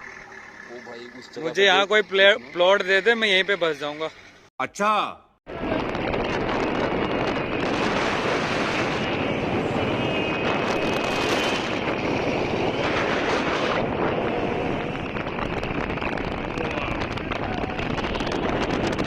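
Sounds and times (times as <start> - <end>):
road noise: 0.0 - 4.5, 5.5 - 19.0
motorcycle engine rumble: 5.5 - 19.0
wind rushing over microphone: 5.5 - 19.0.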